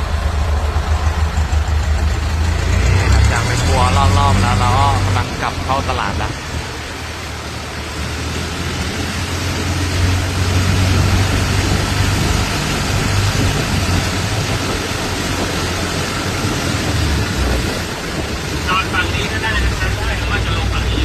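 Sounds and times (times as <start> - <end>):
motorboat engine humming: 0.0 - 21.0.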